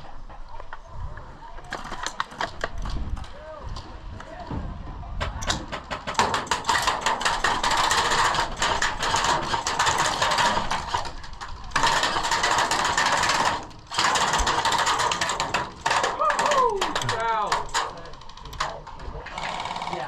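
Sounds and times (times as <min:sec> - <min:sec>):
airsoft gunfire: 0:11.8 - 0:17.8.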